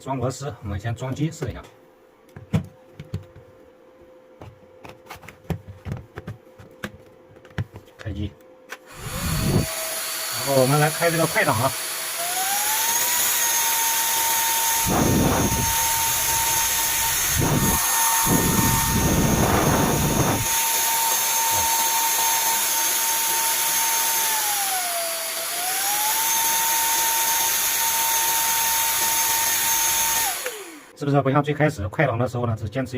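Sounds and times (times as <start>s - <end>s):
vacuum cleaner motor whine: 8.8s - 31.0s
rushes of air noise: 8.9s - 9.7s, 14.8s - 20.5s.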